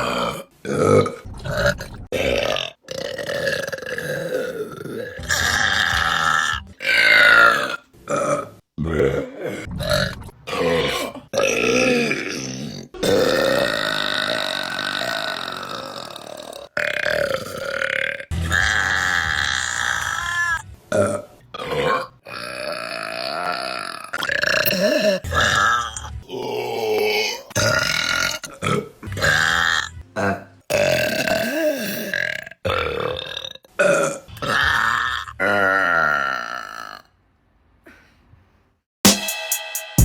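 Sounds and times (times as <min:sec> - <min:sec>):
woman burping: 0:08.1 - 0:17.8, 0:21.0 - 0:34.6.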